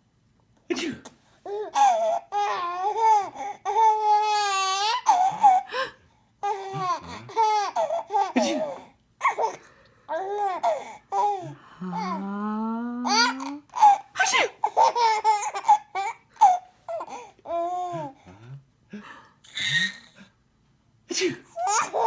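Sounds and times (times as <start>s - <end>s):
lower voice rising in pitch: 11.8s - 13.7s.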